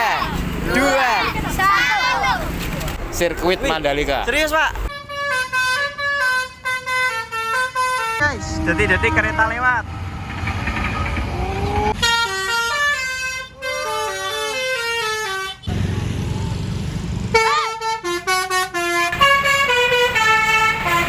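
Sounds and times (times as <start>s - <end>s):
engine and traffic rumble: 0.0s - 21.0s
musical bus air horn tune: 4.9s - 9.8s, 12.0s - 15.7s, 17.3s - 21.0s.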